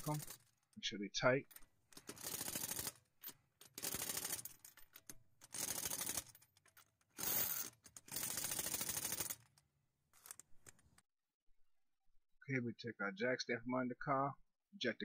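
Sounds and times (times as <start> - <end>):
pneumatic impact wrench rattling: 7.2 - 9.4.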